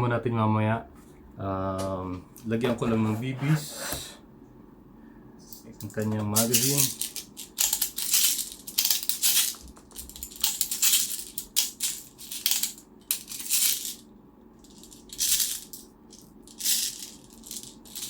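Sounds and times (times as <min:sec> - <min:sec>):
plastic pellets rattling: 0:06.4 - 0:14.0, 0:14.7 - 0:18.0.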